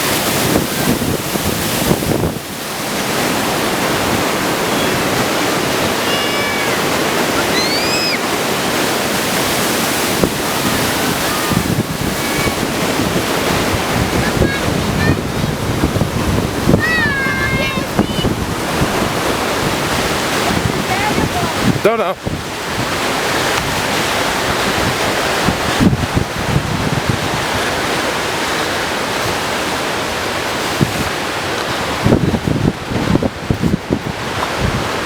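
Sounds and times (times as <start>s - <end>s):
fast-flowing water rushing: 0.0s - 35.0s
short high-pitched calls: 6.0s - 8.3s.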